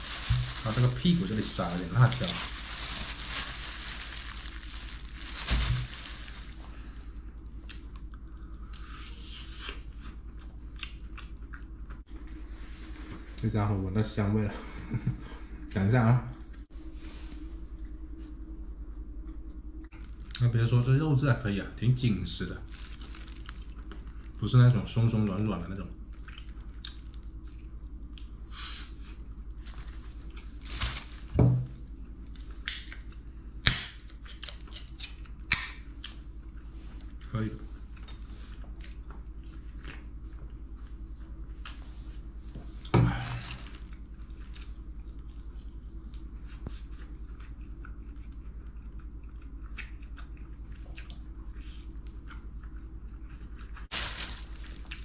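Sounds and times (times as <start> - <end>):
steady low hum: 0.0 - 55.0
person chewing and crunching: 7.6 - 12.0, 22.6 - 24.4, 26.0 - 28.4, 43.1 - 55.0.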